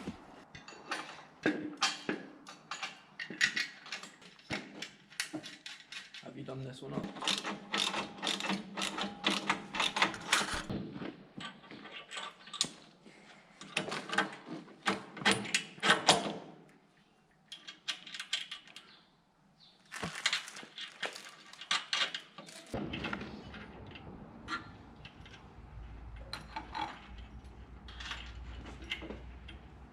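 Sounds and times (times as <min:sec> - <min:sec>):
metal tools and bolts clinking: 0:00.5 - 0:06.4, 0:24.5 - 0:29.7.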